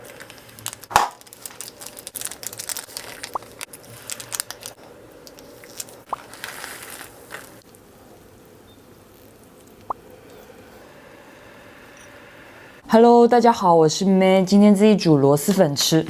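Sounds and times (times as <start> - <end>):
food crinkling and crunching: 0.0 - 10.8
loud snap: 0.9 - 1.2
wet smacks: 0.9 - 1.2.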